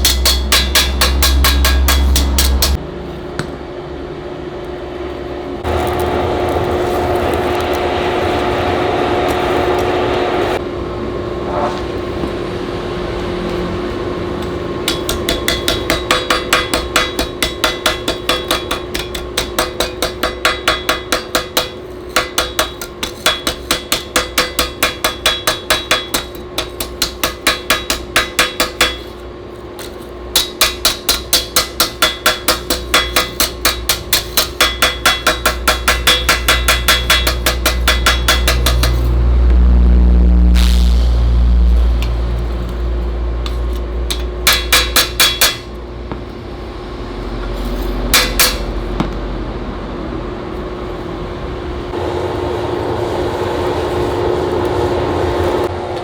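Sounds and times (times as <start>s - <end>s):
hammer ringing on anvil: 0.0s - 2.8s, 14.4s - 29.2s, 29.8s - 39.2s, 43.4s - 45.8s, 48.1s - 48.8s
steady hum: 0.0s - 56.0s
loud rushing noise: 3.9s - 14.9s, 38.0s - 44.5s, 45.6s - 56.0s.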